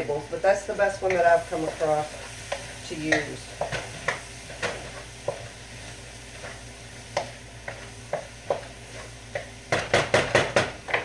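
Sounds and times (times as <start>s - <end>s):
vegetables sizzling in oil: 0.0s - 11.0s
utensil knocking against pan: 9.4s - 11.0s.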